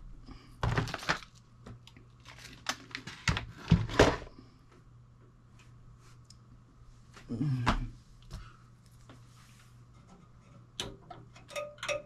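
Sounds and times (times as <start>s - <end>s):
crinkly rustles: 0.6s - 4.0s.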